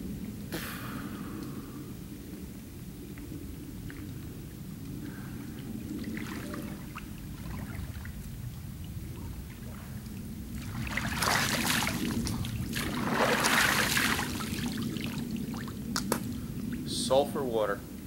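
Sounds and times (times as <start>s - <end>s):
steady low rumble: 0.0s - 18.0s
water sloshing and splashing: 3.8s - 16.9s.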